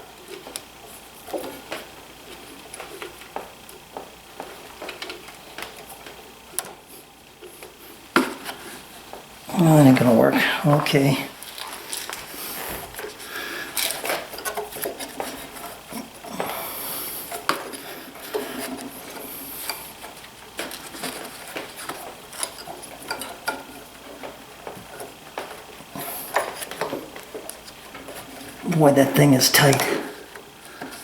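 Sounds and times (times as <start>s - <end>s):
belt rubbing on pulley: 11.4s - 28.8s.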